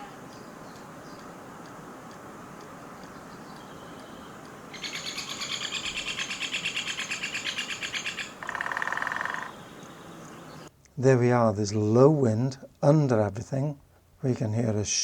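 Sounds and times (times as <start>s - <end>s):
light wind: 0.0s - 15.0s
woodpecker chattering call: 2.6s - 10.7s.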